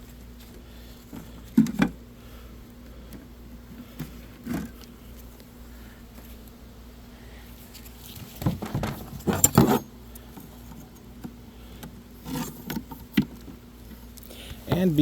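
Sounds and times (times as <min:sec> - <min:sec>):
wood and plastic scraping: 0:00.5 - 0:02.0, 0:03.8 - 0:04.9, 0:07.8 - 0:15.0.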